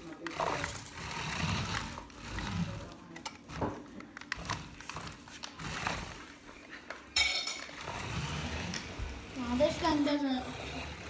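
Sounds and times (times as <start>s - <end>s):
small electric motor whirring: 0.0s - 6.3s, 7.8s - 11.0s
toy car chassis clattering: 0.0s - 6.3s.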